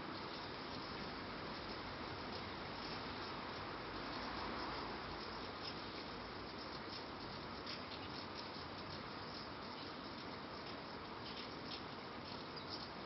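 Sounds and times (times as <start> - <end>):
light rain hissing: 0.0 - 13.0.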